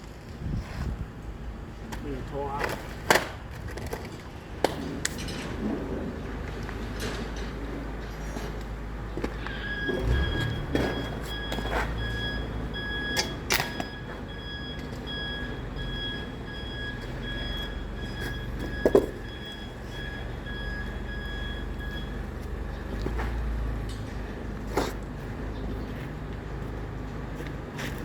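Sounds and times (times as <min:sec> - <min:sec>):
heavy machinery engine running: 0:05.4 - 0:28.0
electronic beeping: 0:09.6 - 0:22.2.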